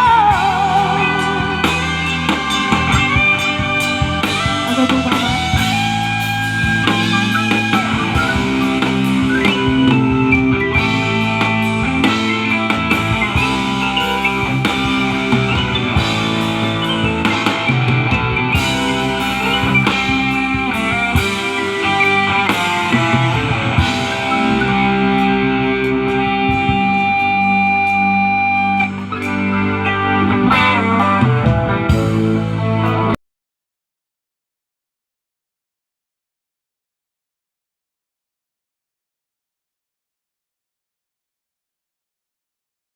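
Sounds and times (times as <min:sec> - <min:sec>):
rock band playing: 0:00.0 - 0:33.2.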